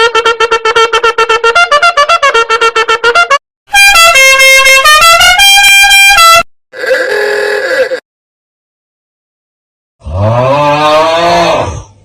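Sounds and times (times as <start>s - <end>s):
horn-like tune: 0.0s - 6.5s.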